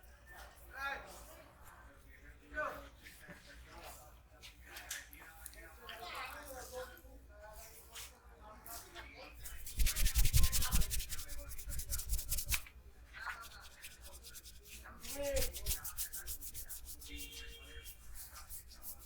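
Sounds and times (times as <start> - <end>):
hands rubbing hair: 9.4 - 12.7, 13.3 - 19.0.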